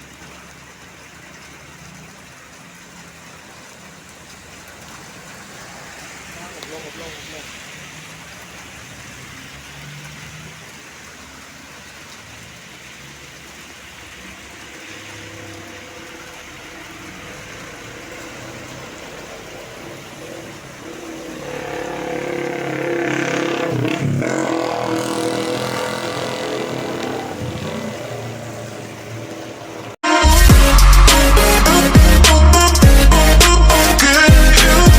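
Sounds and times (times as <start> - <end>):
road traffic: 0.0 - 34.9
steady horn tones: 14.8 - 34.9
bus engine running: 15.8 - 34.9.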